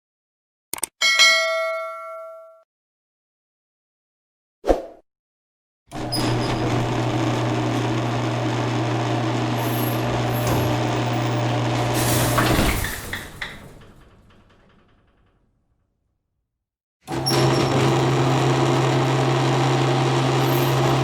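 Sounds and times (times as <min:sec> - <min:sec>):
garage door opener motor humming: 0:05.9 - 0:15.3, 0:17.1 - 0:21.0
garage door clattering to a stop: 0:05.9 - 0:15.8, 0:17.1 - 0:21.0
garage door rattling: 0:05.9 - 0:15.8, 0:17.1 - 0:21.0.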